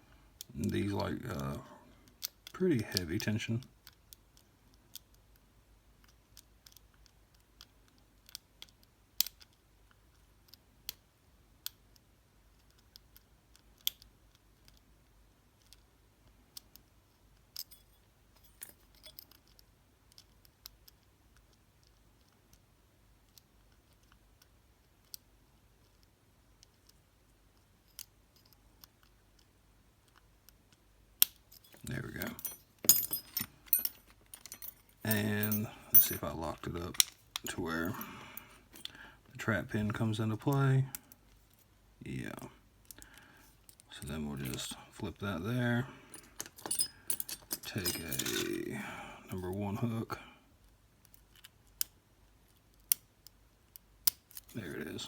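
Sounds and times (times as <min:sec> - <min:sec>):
metallic clicks of lock picking: 0:06.0 - 0:07.1, 0:08.2 - 0:09.6, 0:31.2 - 0:39.0, 0:46.2 - 0:48.6, 0:52.7 - 0:54.6.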